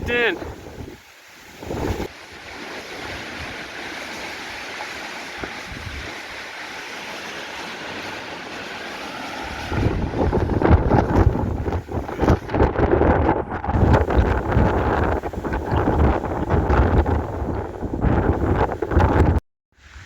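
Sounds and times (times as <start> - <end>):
wind gust buffeting microphone: 0.0 - 2.1, 5.4 - 6.4, 8.6 - 19.4
wind blowing: 0.0 - 20.0.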